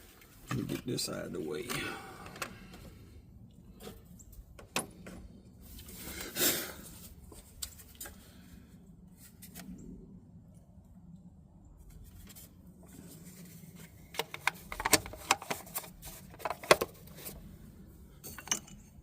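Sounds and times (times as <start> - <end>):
tools knocking and clicking: 18.2 - 19.0.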